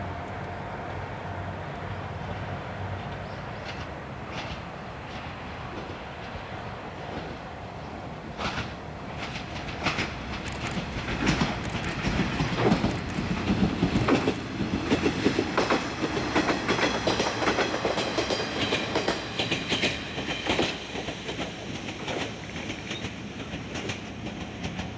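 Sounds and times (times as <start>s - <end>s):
diesel railcar running: 0.0s - 24.9s
wheels clicking over rail joints: 8.4s - 24.9s.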